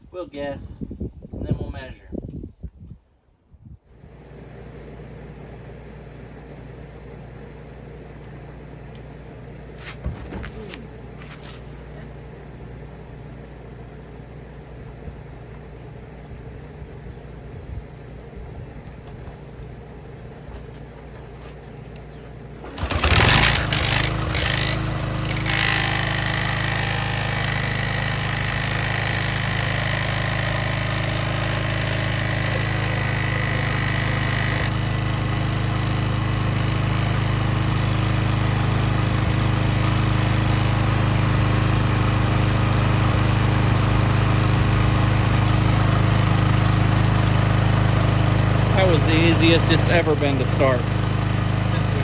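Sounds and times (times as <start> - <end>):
small gas engine running: 22.1 - 52.0.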